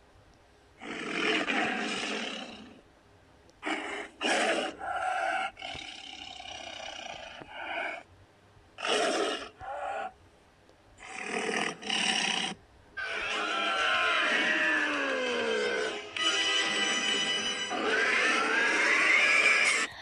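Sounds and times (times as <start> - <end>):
harsh monster roars: 0.8 - 2.8, 3.6 - 8.0, 11.0 - 20.0
monster growl: 11.0 - 16.1, 17.7 - 20.0
music with sliding tones: 15.4 - 17.8.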